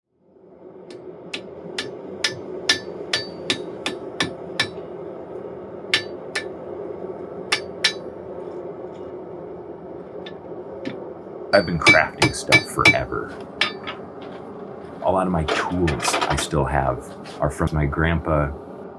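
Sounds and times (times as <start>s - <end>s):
steady hum: 0.3s - 18.9s
hammer striking metal on anvil: 1.8s - 4.8s, 5.9s - 6.5s, 7.5s - 8.0s, 11.6s - 13.9s.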